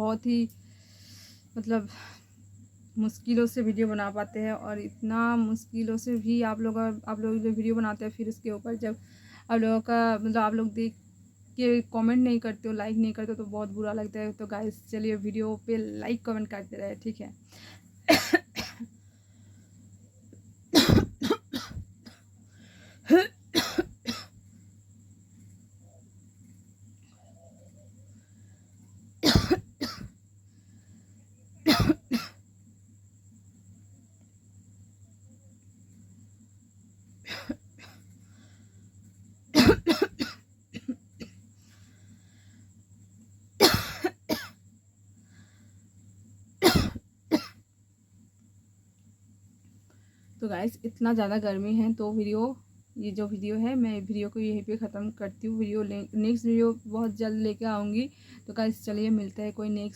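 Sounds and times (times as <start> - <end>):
woman coughing: 18.1 - 18.9, 20.8 - 22.2, 23.1 - 24.3, 29.2 - 30.1, 31.6 - 32.4, 37.3 - 38.0, 39.6 - 41.4, 43.6 - 44.6, 46.6 - 47.6.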